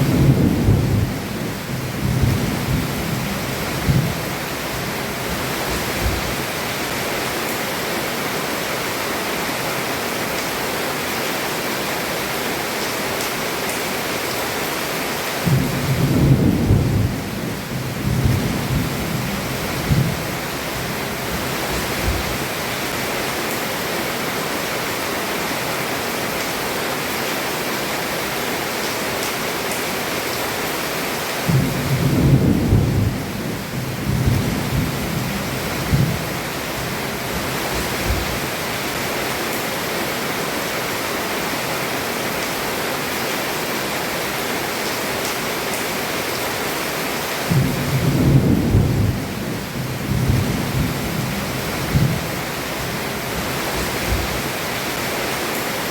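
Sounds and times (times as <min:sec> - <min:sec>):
heavy rain on a roof: 0:00.0 - 0:55.9
low thunder roll: 0:31.5 - 0:36.2, 0:47.5 - 0:52.2.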